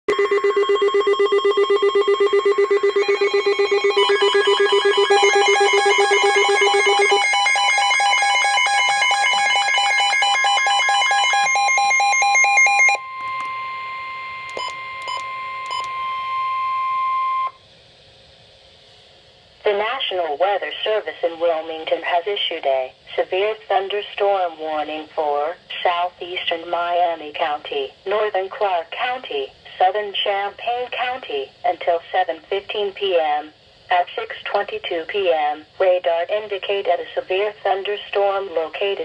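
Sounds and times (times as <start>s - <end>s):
steady alert tone: 0.1s - 10.1s
pulsing electronic alert tone: 0.1s - 13.5s.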